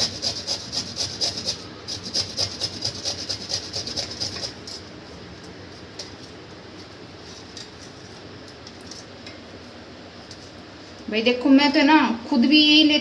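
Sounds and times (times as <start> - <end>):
root grated on hand grater: 0.0 - 4.7.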